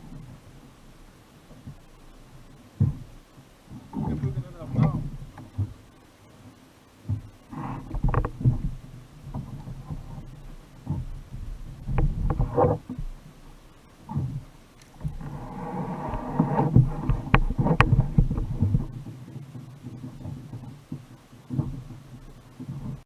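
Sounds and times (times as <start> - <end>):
rumbling water: 0.0 - 23.0
knocks against kayak hull: 2.8 - 3.1.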